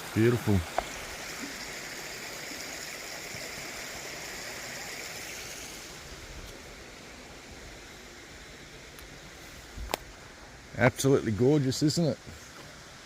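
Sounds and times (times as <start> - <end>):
stream water running over rocks: 0.0 - 13.0.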